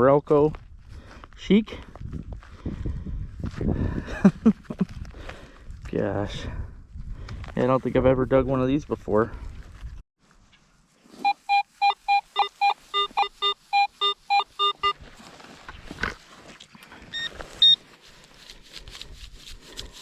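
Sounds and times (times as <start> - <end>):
higher-pitched detector tones: 11.2 - 15.1, 17.1 - 17.8
metal detector beeps: 11.2 - 15.1, 17.1 - 17.8.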